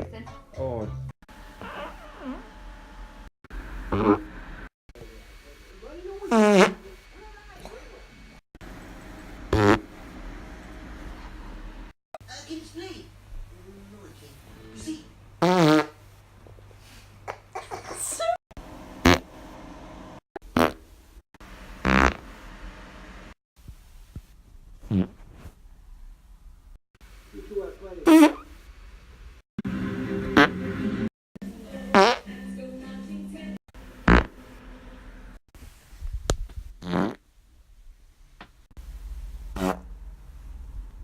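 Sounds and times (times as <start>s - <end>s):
human farts: 1.6s - 2.5s, 3.9s - 4.3s, 6.3s - 6.8s, 9.5s - 9.9s, 15.4s - 16.0s, 19.0s - 19.2s, 20.5s - 20.8s, 21.8s - 22.2s, 24.8s - 25.5s, 28.0s - 28.5s, 31.9s - 32.3s, 34.0s - 34.4s, 36.8s - 37.2s, 39.5s - 39.9s.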